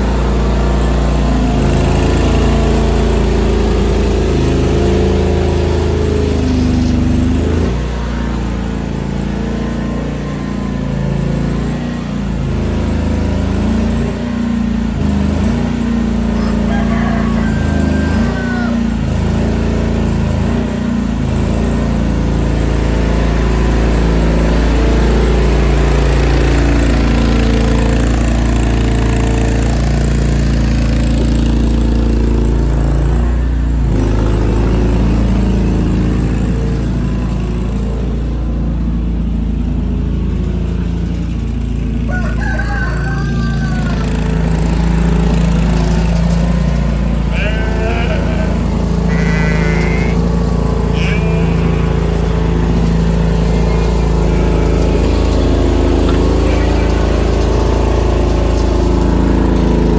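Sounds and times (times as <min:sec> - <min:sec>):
skid steer engine running: 0:00.0 - 0:59.9
rooster crowing: 0:16.2 - 0:19.7, 0:41.9 - 0:46.3, 0:47.2 - 0:59.5.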